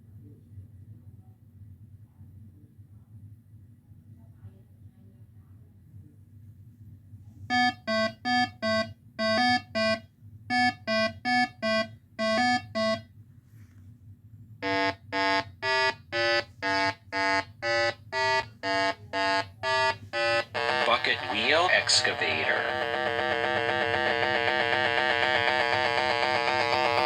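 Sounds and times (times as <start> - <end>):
electronic buzzer beeps: 7.5 - 13.0, 14.6 - 27.0.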